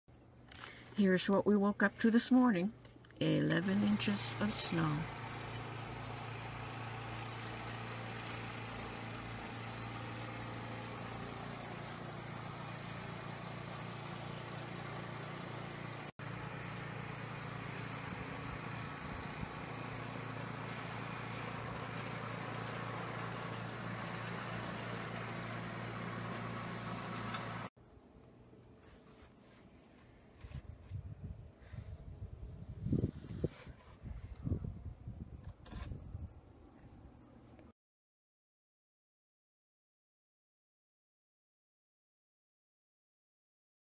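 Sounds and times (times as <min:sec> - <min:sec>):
engine humming: 0:03.4 - 0:27.7.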